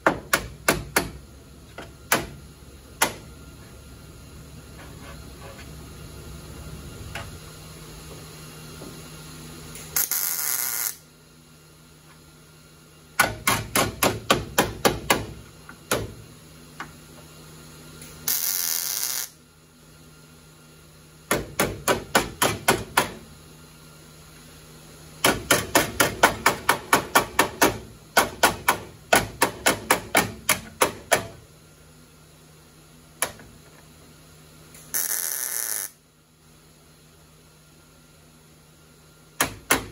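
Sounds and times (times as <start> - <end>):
steady low hum: 0.0 - 39.9
welding crackling hiss: 10.0 - 11.0, 18.3 - 19.4, 34.8 - 36.0.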